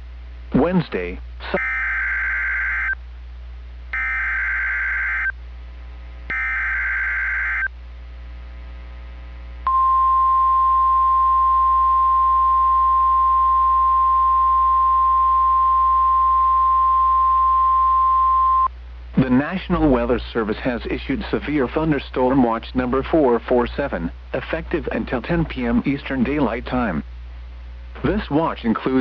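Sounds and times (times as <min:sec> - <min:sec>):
steady warning alarm tone: 0:01.4 - 0:03.0, 0:04.0 - 0:05.4, 0:06.3 - 0:07.7.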